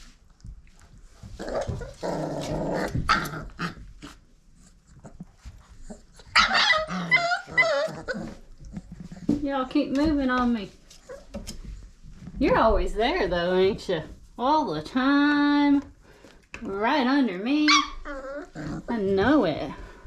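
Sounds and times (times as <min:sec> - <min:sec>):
puppies growling: 0:00.6 - 0:09.4, 0:17.5 - 0:20.0
puppies yipping and whining: 0:05.7 - 0:09.0, 0:17.6 - 0:18.9.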